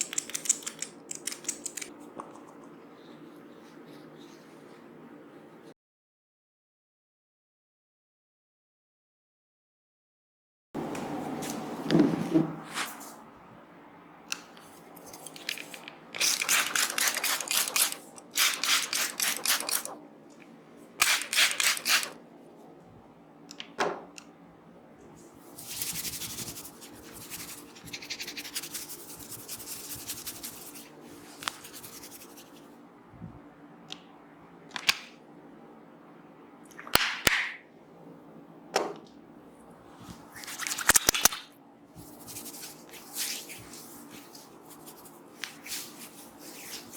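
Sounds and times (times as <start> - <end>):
rubbing hair: 14.6 - 20.0, 25.2 - 32.8, 42.0 - 46.9
fast patting on scalp: 25.6 - 30.8.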